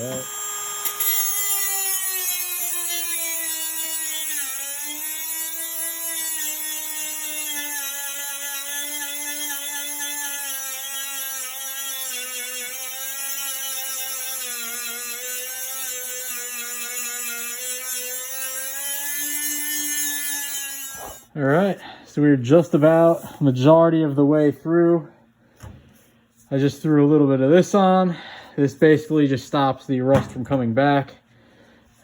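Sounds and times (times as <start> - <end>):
power tool grinding metal: 0.0 - 21.3.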